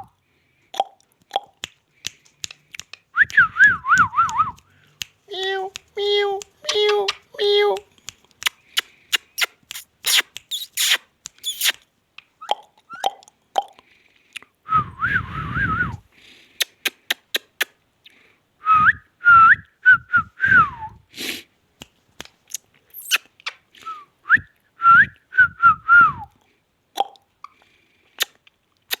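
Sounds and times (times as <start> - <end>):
sharp clicks: 1.2 - 3.1, 4.3 - 12.3
parakeet whistling: 10.1 - 11.7.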